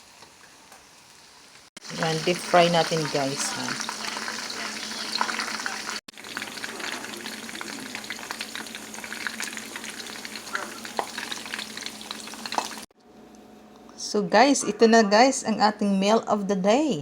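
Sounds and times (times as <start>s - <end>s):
chicken deep-frying in oil: 0.0s - 12.9s.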